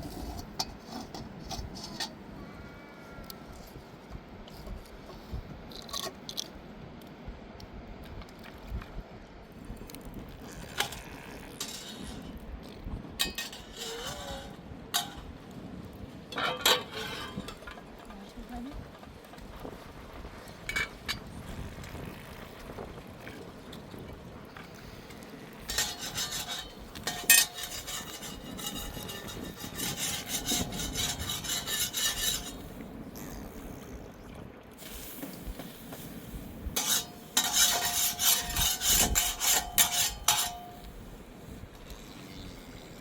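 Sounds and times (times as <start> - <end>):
rhythmic scraping on hard surface: 0.0 - 2.1, 10.8 - 12.4, 13.2 - 15.4, 24.7 - 32.8, 35.1 - 41.2.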